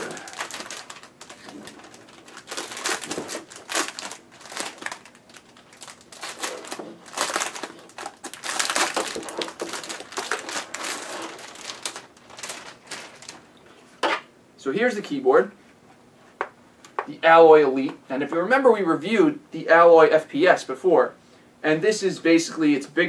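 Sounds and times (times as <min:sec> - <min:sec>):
plastic wrapping crinkling: 0:00.0 - 0:13.6.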